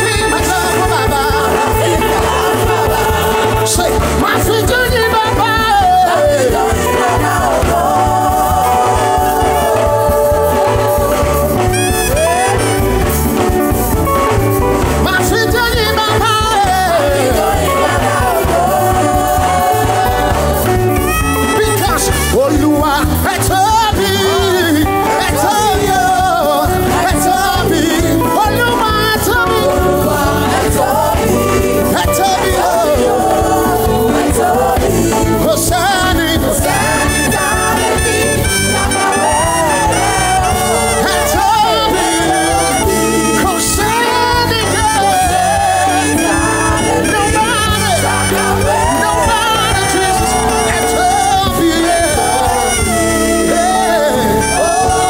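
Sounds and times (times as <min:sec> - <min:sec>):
full band with steady beat: 0:00.0 - 0:55.0
gospel singing: 0:00.0 - 0:55.0.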